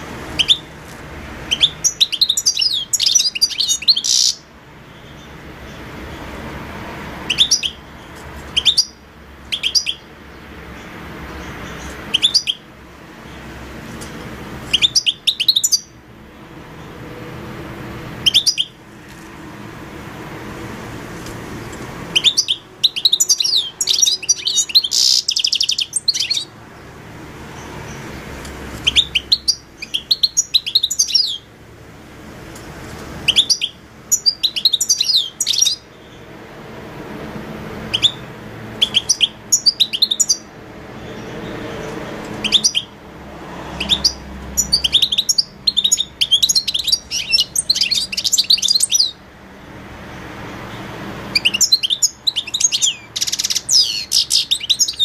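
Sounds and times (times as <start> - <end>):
goldfinch twittering song: 0.0 - 0.7, 1.4 - 5.8, 7.2 - 12.7, 14.0 - 16.0, 18.2 - 18.8, 21.6 - 26.9, 27.5 - 31.5, 33.2 - 36.3, 37.8 - 43.0, 43.7 - 49.2, 50.8 - 55.0.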